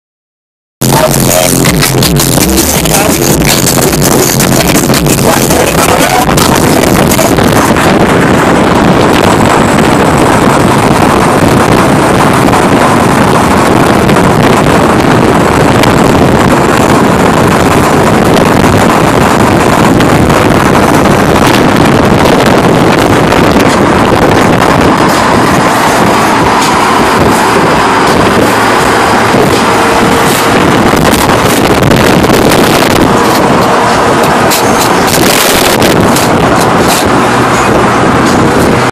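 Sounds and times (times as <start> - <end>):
highway tyre and engine noise: 0.8 - 38.9
wind buffeting microphone: 0.8 - 38.9.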